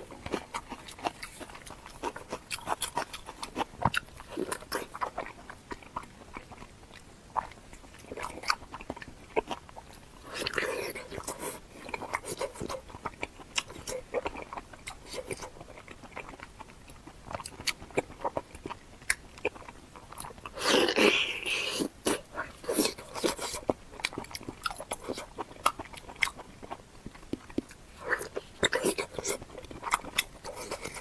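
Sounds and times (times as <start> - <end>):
close-miked chewing: 0.0 - 31.0
food crunching: 0.0 - 31.0.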